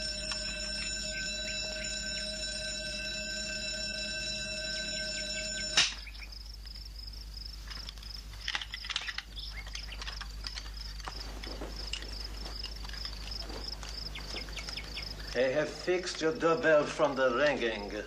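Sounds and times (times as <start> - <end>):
electric doorbell ringing: 0.0 - 6.0
crickets chirping: 0.0 - 18.0.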